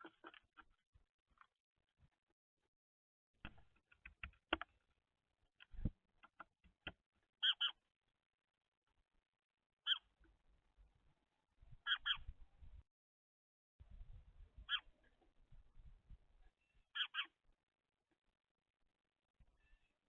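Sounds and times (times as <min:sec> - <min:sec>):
short high bird chirps: 0:16.6 - 0:17.3.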